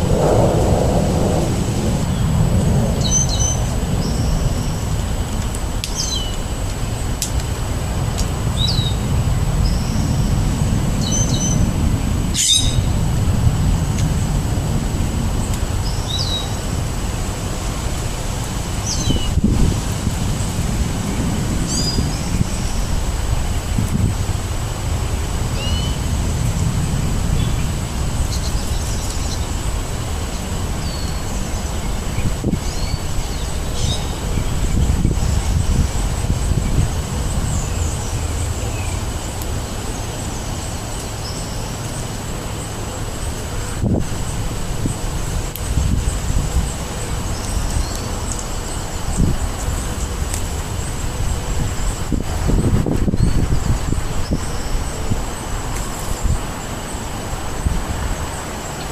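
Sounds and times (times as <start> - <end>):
wind buffeting microphone: 0.0 - 58.9
songbird calling: 5.9 - 6.4, 12.3 - 13.0, 25.6 - 26.1.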